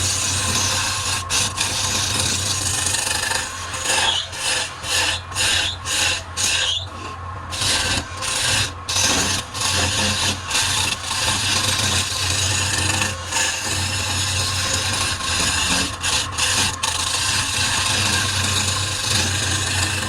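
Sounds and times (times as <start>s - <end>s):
rasping on spinning wood: 0.0s - 20.0s
wood lathe humming: 0.0s - 20.0s.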